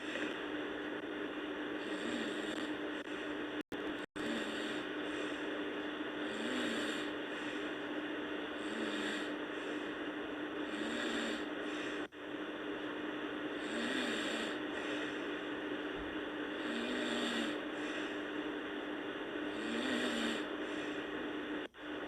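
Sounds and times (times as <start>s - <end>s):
low hum: 0.0s - 6.4s, 11.4s - 13.6s, 17.5s - 19.6s
girl snoring softly: 1.8s - 3.4s, 4.0s - 7.8s, 8.4s - 10.0s, 10.6s - 12.2s, 13.5s - 15.6s, 16.4s - 18.4s, 19.4s - 21.8s.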